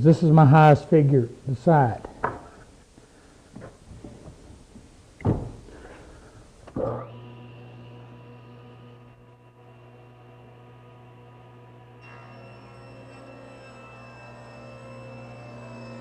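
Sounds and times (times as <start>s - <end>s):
wooden board knocks: 5.2s - 5.6s
table saw motor humming: 6.7s - 16.0s.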